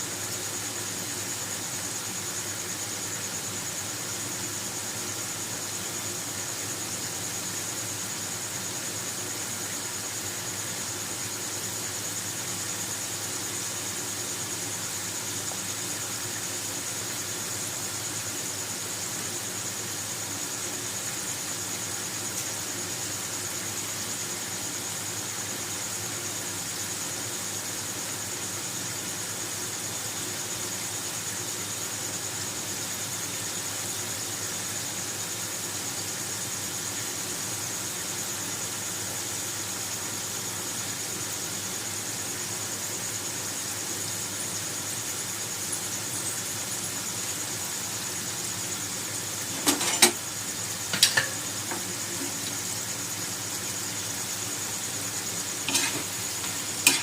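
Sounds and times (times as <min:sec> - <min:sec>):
fries sizzling in hot oil: 0:00.0 - 0:57.0
utensil knocking against pan: 0:49.5 - 0:50.2, 0:50.9 - 0:52.5, 0:55.7 - 0:56.1.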